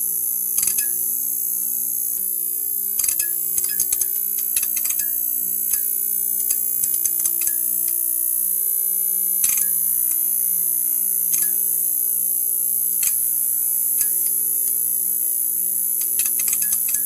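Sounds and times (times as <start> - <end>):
neon sign buzzing: 0.0 - 17.0.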